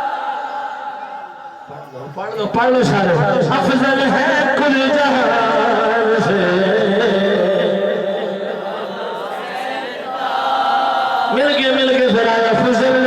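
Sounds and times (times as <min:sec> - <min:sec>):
man chanting: 0:01.7 - 0:08.6, 0:11.3 - 0:13.0.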